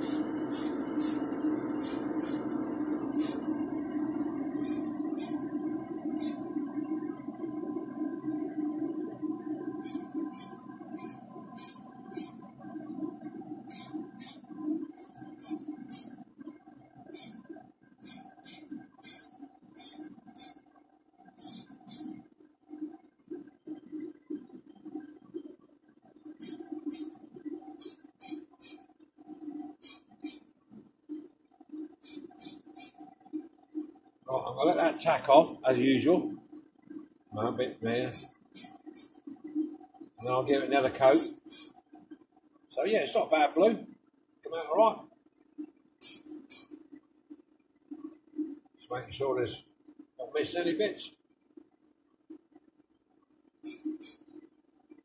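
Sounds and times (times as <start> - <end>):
spray paint hissing: 0.0 - 1.2, 1.8 - 2.5, 3.1 - 3.5, 4.6 - 5.4, 6.2 - 6.4, 9.8 - 12.4, 13.6 - 16.2, 17.1 - 17.4, 18.0 - 20.6, 21.4 - 22.2, 26.4 - 27.2, 27.8 - 28.9, 29.8 - 30.5, 32.0 - 33.0, 38.1 - 39.2, 41.1 - 41.8, 46.0 - 46.8, 53.6 - 54.3
steady motor hum: 0.0 - 20.7
low fluctuating hum: 0.0 - 55.0.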